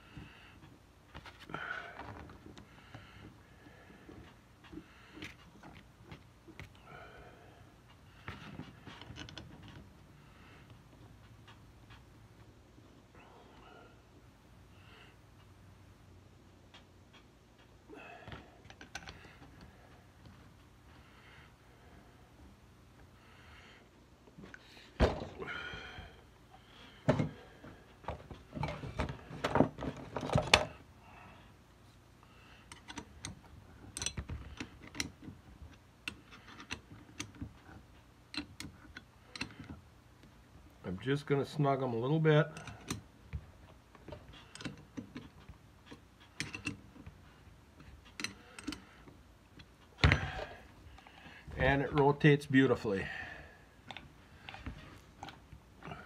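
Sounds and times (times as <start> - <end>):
metal parts clinking and knocking: 32.7 - 35.4, 44.1 - 47.1.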